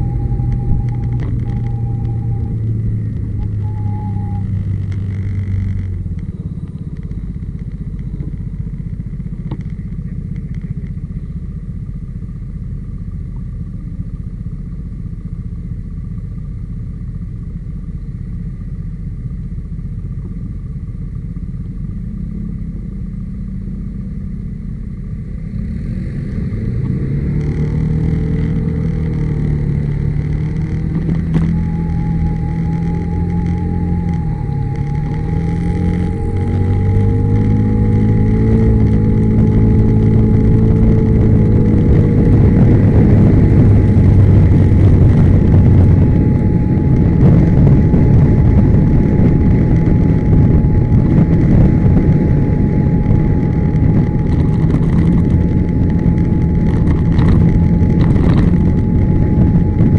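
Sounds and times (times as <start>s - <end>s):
humming noise: 0.0s - 59.9s
scooter engine running: 0.0s - 59.9s.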